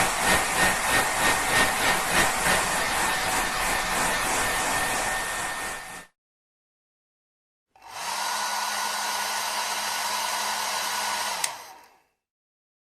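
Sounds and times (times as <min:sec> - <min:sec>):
hair dryer running: 0:00.0 - 0:06.1, 0:07.8 - 0:12.1
hair dryer switch click: 0:11.3 - 0:11.8.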